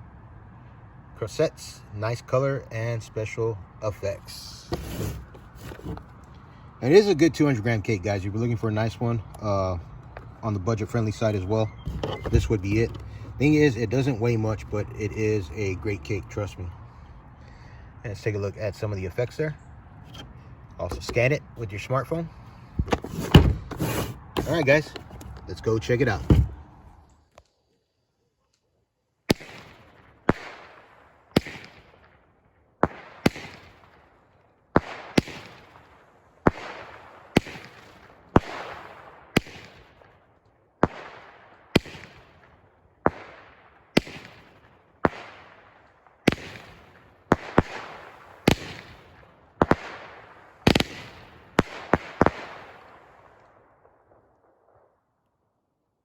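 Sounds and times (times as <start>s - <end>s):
firework shots exploding: 29.3s - 32.2s, 32.8s - 34.0s, 34.8s - 40.1s, 40.8s - 45.6s, 46.2s - 53.4s.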